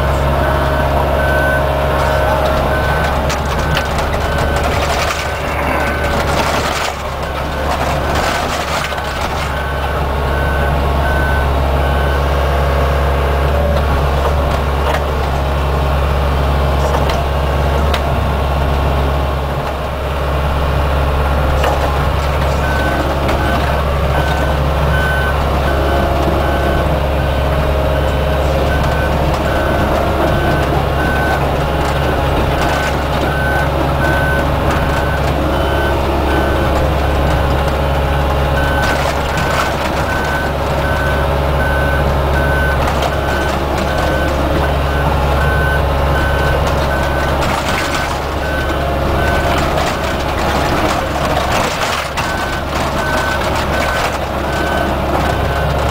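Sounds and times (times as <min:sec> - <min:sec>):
backup alarm beeping: 0:00.0 - 0:12.4, 0:21.5 - 0:55.9
excavator engine running: 0:00.0 - 0:55.9
metal clatter: 0:02.0 - 0:09.8.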